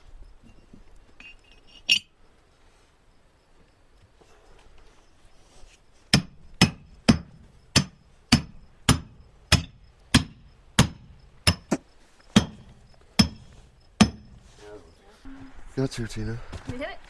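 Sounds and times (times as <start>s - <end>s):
hammer striking steel wedges: 6.1s - 14.4s.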